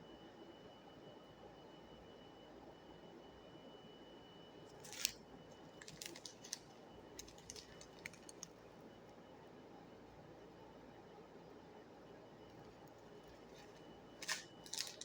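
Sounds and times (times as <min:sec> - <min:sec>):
small objects clicking and tapping: 0:13.6 - 0:15.0.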